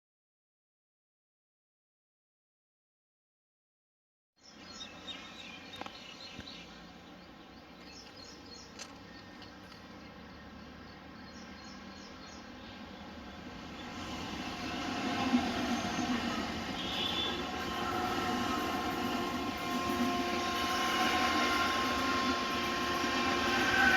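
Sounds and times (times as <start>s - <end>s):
outdoor noise: 4.4s - 23.9s
electric locomotives running: 4.8s - 23.9s.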